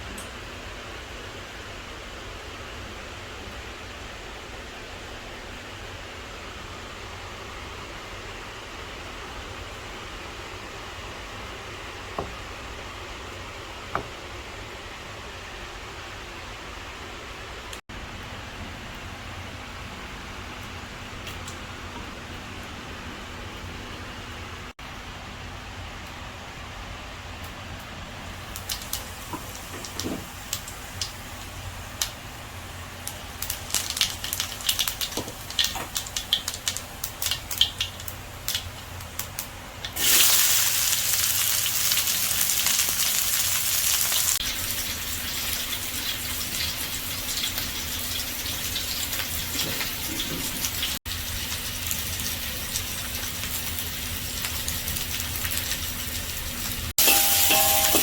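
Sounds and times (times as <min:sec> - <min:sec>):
hot oil crackling and popping: 0:27.4 - 0:58.0
food sizzling in oil: 0:28.3 - 0:58.0.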